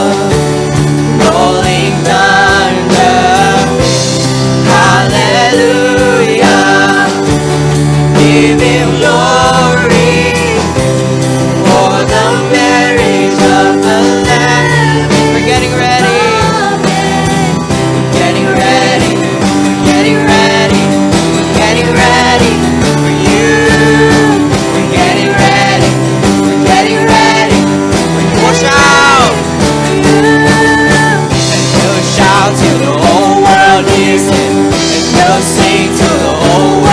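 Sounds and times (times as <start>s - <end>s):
person singing: 0.0s - 0.5s, 1.1s - 7.4s, 8.0s - 11.0s, 11.6s - 36.9s
guitar: 0.0s - 36.9s
worship band playing: 0.0s - 36.9s.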